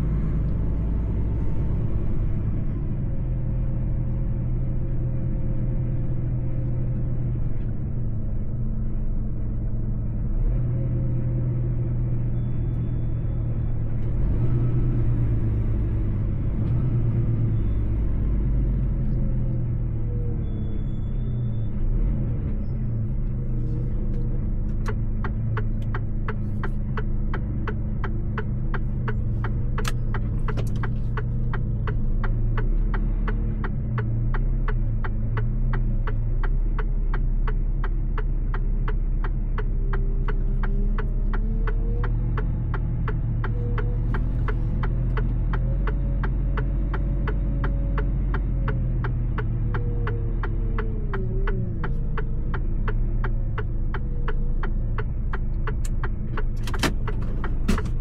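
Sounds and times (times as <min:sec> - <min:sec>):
truck engine droning: 0:00.0 - 0:58.0
even ticking: 0:24.8 - 0:58.0.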